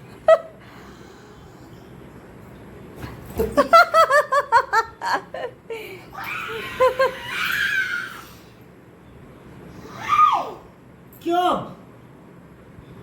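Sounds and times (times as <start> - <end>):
woman laughing: 3.5 - 7.4.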